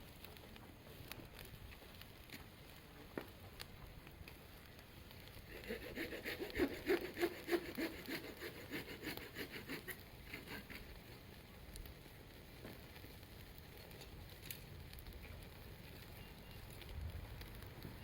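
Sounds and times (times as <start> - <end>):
hand saw cutting wood: 5.5 - 11.0.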